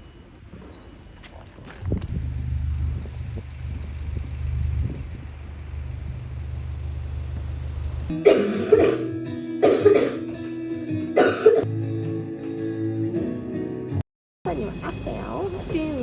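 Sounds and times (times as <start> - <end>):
steady low hum: 1.8 - 8.1
background music: 8.1 - 16.0
person coughing hard: 8.2 - 10.3, 11.2 - 11.7.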